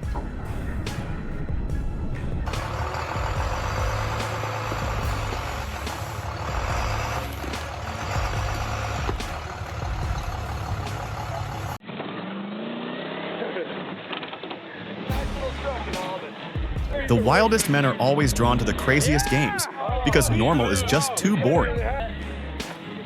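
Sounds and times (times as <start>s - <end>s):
dull vehicle sound: 0.0s - 16.0s, 16.7s - 22.7s
bus engine running under load: 1.6s - 11.8s.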